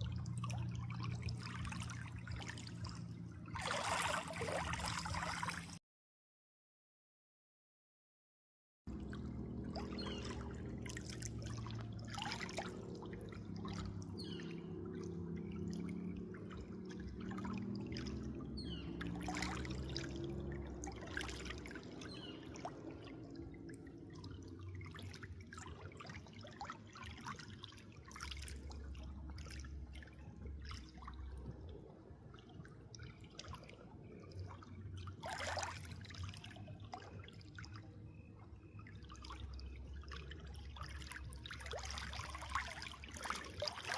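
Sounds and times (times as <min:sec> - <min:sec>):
water trickling and splashing: 0:00.0 - 0:05.8, 0:08.9 - 0:43.9
steady low rumble: 0:08.9 - 0:19.4.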